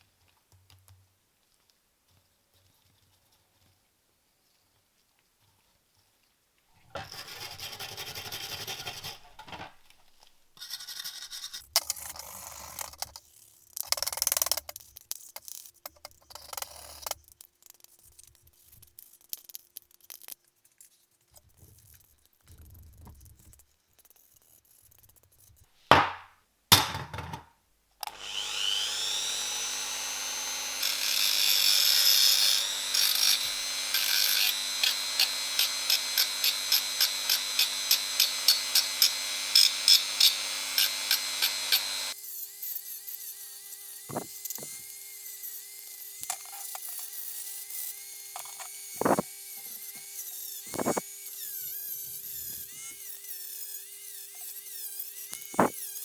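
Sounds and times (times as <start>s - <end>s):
electric power tool spinning: 28.0s - 56.0s.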